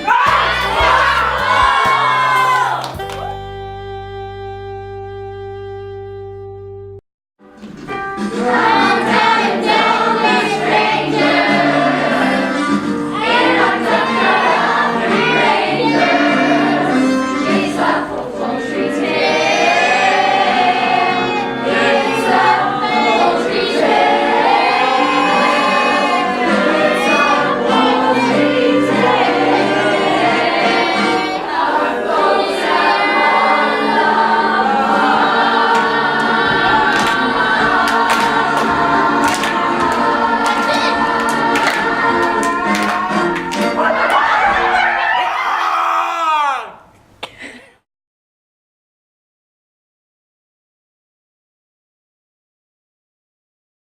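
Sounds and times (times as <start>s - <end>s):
instrumental accompaniment: 0.1s - 43.9s
cast singing in chorus: 8.4s - 43.4s.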